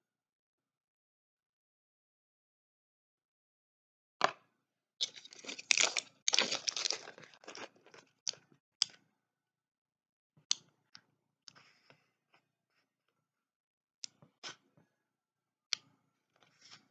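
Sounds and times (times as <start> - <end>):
packaging rustling and crunching: 5.0 - 8.0.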